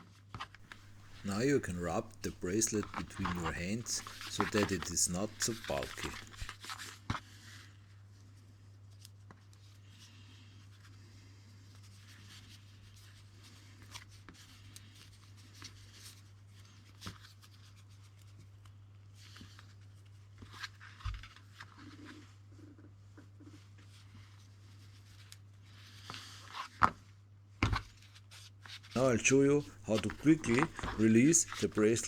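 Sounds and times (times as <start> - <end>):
scratchy rustle of cord on skin: 0.6 - 6.6, 29.0 - 32.0.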